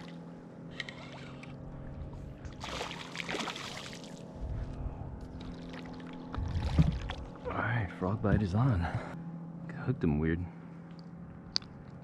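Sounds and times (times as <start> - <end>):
steady low hum: 0.0 - 12.0
water splashing: 2.5 - 4.3, 5.3 - 7.4
low rumble: 4.2 - 9.2.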